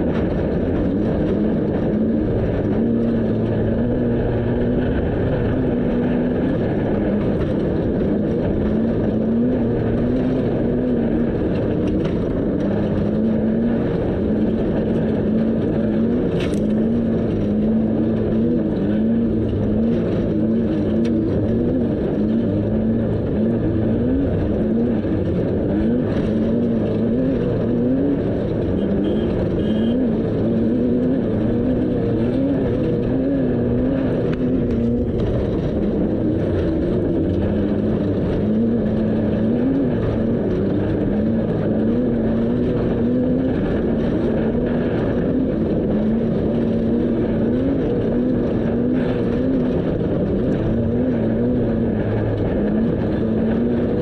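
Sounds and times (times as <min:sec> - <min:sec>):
off-road vehicle engine running: 0:00.0 - 0:54.0.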